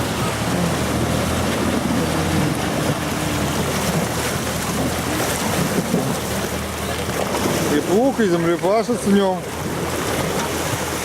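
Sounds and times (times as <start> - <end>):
wind on microphone: 0.0 - 7.8
off-road vehicle engine running: 0.0 - 11.0.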